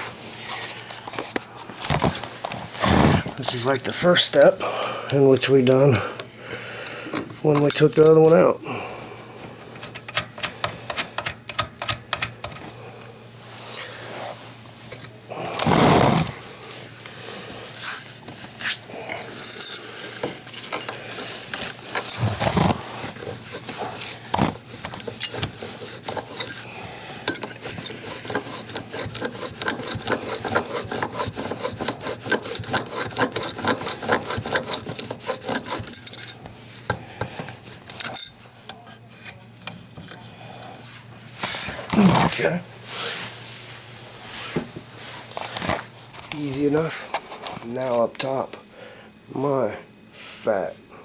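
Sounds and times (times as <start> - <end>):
hand tools scraping metal: 7.2 - 8.4, 18.6 - 38.4.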